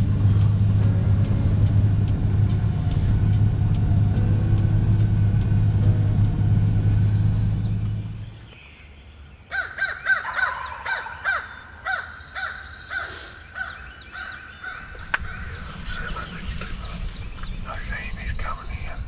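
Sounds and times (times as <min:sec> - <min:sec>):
crow cawing: 0:09.5 - 0:16.3.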